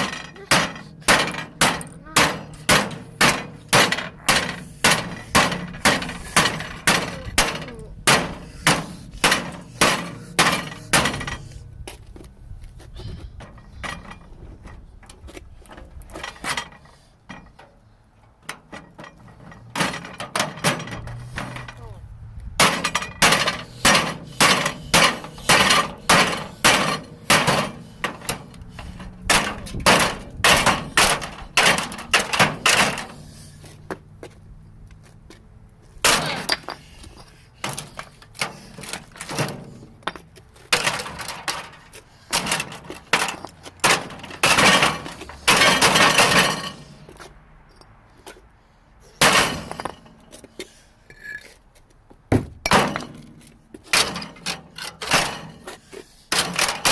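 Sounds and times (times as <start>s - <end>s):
microwave oven being smashed: 42.3s - 46.8s, 56.3s - 56.9s.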